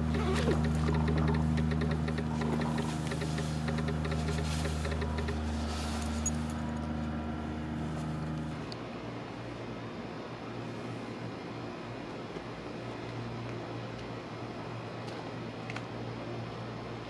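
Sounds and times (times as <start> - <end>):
rapid ticking: 0.0 - 5.4
construction machinery engine: 0.0 - 9.8.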